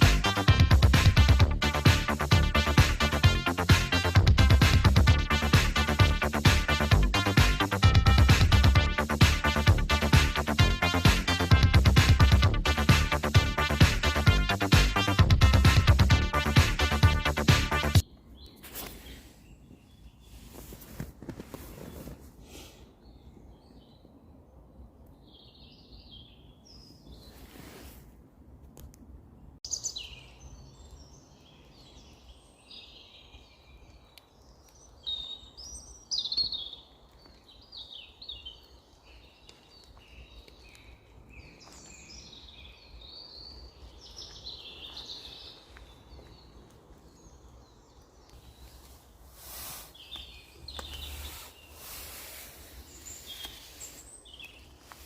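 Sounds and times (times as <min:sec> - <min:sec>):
songbirds singing: 0:13.6 - 0:20.8, 0:22.8 - 0:27.5, 0:29.3 - 0:55.0.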